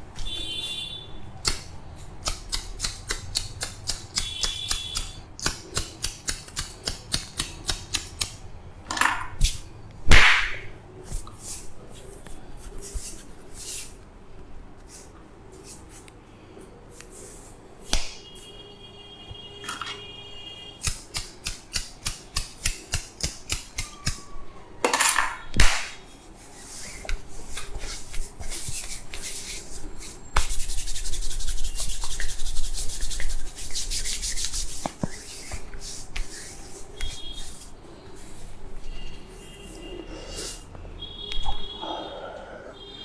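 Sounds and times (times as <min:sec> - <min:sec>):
hands rubbing and tapping skin: 0:01.4 - 0:08.4, 0:20.9 - 0:24.3, 0:26.0 - 0:38.6.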